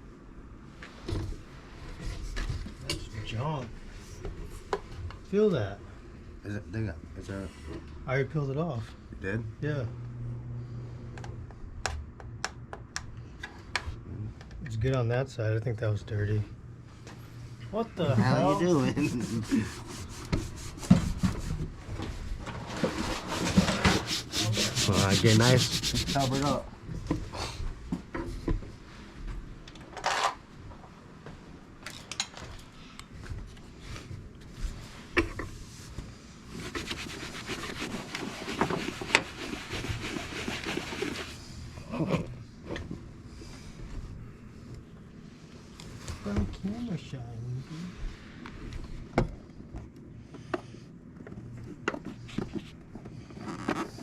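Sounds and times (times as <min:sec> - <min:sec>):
low steady hum: 0:02.0 - 0:21.5.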